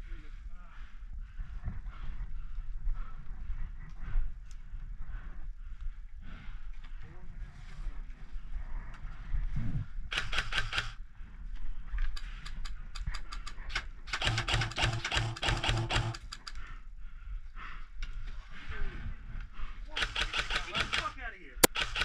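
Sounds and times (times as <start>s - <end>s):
airsoft guns firing: 14.1s - 16.2s, 20.0s - 22.0s.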